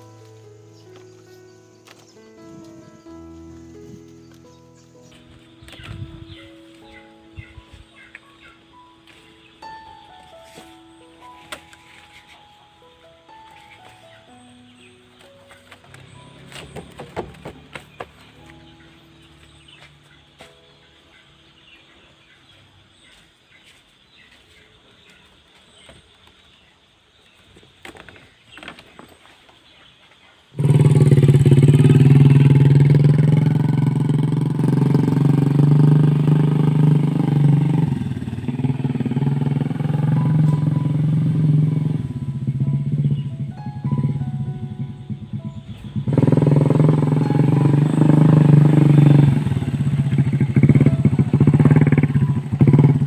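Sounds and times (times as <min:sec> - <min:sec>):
motorcycle engine running: 0:00.0 - 0:09.2, 0:14.7 - 0:20.8, 0:30.5 - 0:53.0.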